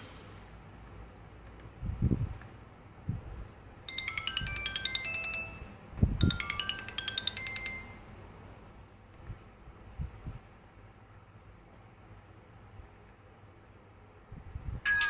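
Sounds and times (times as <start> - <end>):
phone ringtone chime: 3.9 - 8.0.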